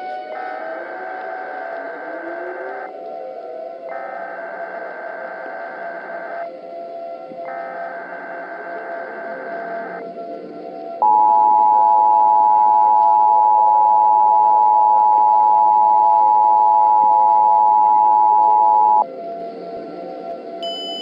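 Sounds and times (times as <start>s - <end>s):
steady background noise: 0.0s - 21.0s
two-tone alert signal: 20.6s - 21.0s.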